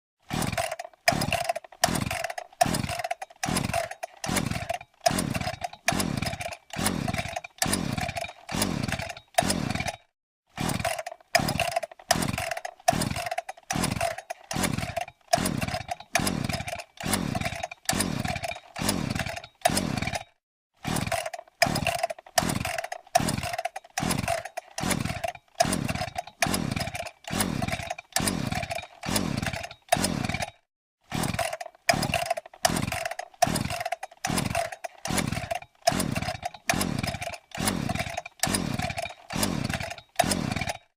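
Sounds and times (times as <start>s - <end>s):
chainsaw motor bursts: 0.2s - 40.9s.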